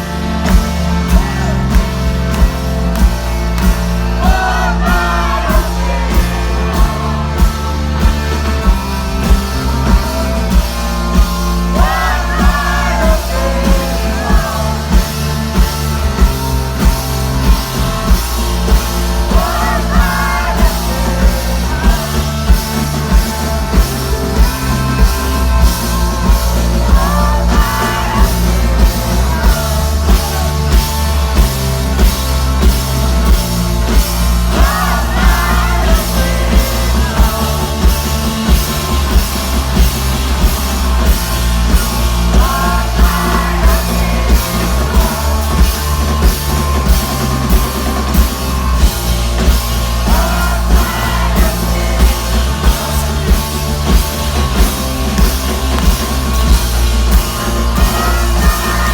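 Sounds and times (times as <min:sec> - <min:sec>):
bass: 0:00.0 - 0:58.9
live rock band playing: 0:00.0 - 0:58.9
pounding drum beat: 0:00.0 - 0:58.9
person singing: 0:19.0 - 0:31.0, 0:34.5 - 0:38.6, 0:57.2 - 0:58.9.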